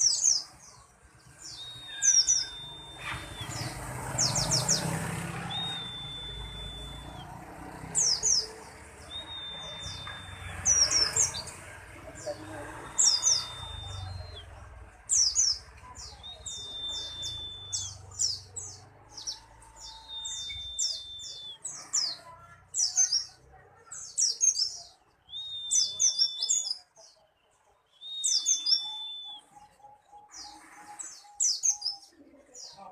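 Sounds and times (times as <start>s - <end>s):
bird high falling chirps: 1.4s - 11.6s
bird long whistled note: 1.6s - 3.7s, 5.5s - 7.3s.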